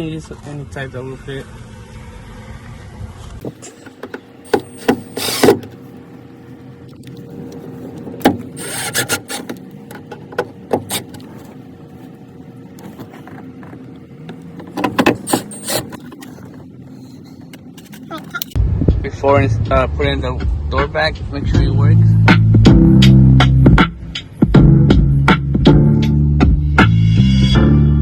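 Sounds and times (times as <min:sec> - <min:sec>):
faint steady hum: 0:01.5 - 0:18.6
screwdriver clicks and scraping: 0:03.6 - 0:05.8, 0:08.5 - 0:11.5, 0:14.6 - 0:16.5.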